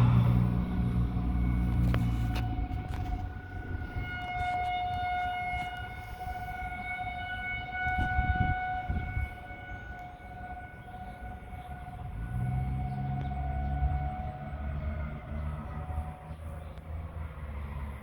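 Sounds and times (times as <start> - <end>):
low rumble: 0.0 - 4.2
warning sirens steady tone: 0.0 - 18.0.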